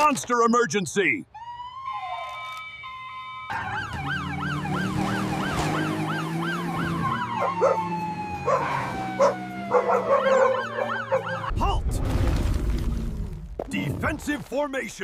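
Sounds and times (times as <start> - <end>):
siren wailing: 1.3 - 11.5.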